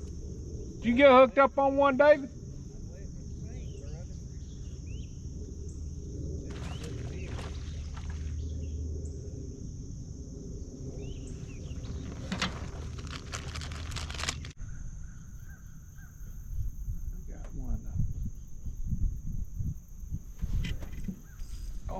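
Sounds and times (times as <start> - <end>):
steady low rumble: 0.0 - 14.6
bird chirps: 3.4 - 5.8
sharp clicking and rattling: 11.9 - 14.6.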